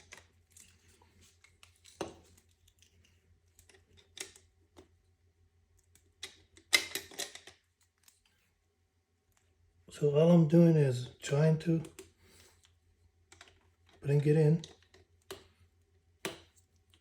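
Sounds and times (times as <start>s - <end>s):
metal and plastic parts clicking: 5.8s - 8.3s.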